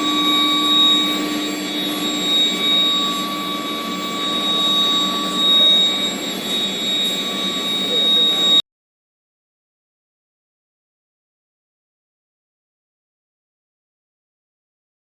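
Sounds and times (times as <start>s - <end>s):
furnace machine noise: 0.0s - 8.6s
high held whine: 0.0s - 8.6s.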